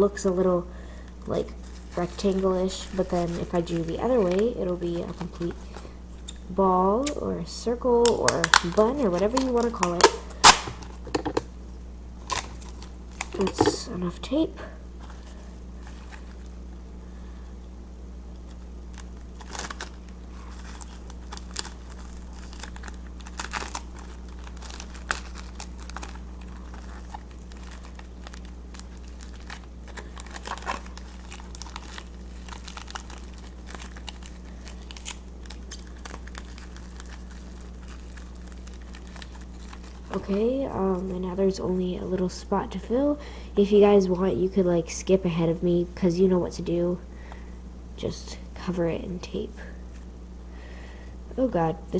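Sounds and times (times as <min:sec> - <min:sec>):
low steady hum: 0:00.0 - 0:51.9
plastic bag crinkling: 0:00.1 - 0:06.5, 0:07.8 - 0:11.4, 0:12.2 - 0:14.3, 0:15.0 - 0:16.6, 0:18.4 - 0:41.4.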